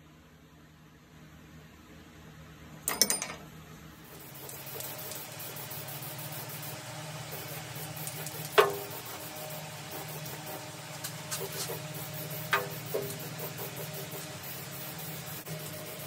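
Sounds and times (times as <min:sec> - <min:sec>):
sharp metal clank: 0:02.9 - 0:03.5
arc welding sizzle: 0:04.0 - 0:16.0.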